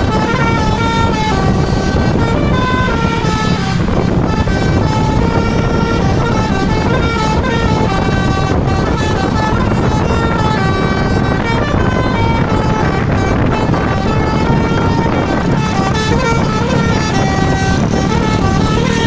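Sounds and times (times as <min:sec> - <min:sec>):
low bus rumble: 0:00.0 - 0:19.0
multi-tone bus horn melody: 0:00.0 - 0:19.0.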